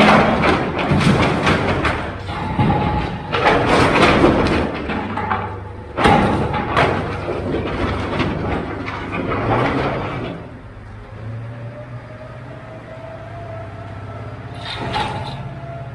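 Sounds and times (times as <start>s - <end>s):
bangs and thuds: 0.0s - 10.4s.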